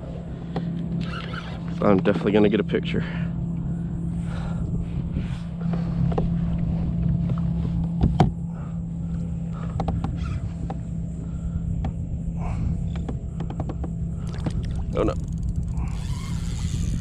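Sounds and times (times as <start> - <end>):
water sloshing against kayak hull: 3.6 - 12.0, 12.6 - 15.4
wind noise: 3.6 - 17.0.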